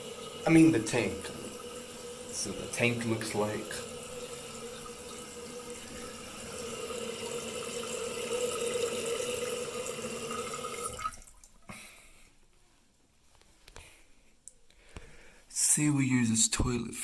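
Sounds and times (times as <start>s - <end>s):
toilet fill valve hissing: 0.0s - 11.3s.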